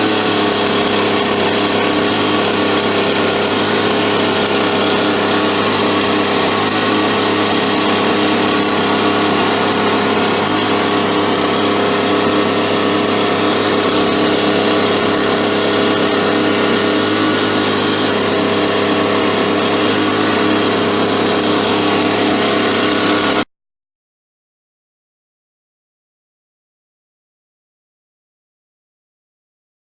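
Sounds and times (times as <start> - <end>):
vacuum motor droning: 0.0 - 23.5.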